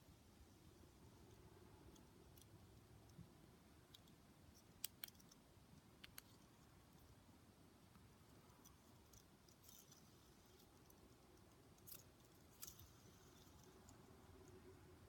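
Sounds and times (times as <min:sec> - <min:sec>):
soft clicks: 0:03.9 - 0:06.5.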